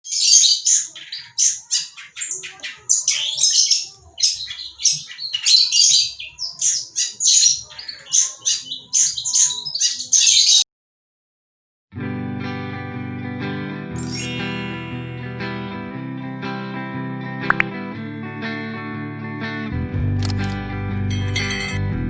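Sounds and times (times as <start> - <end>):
bird chirps and squawks: 0.0 - 10.6.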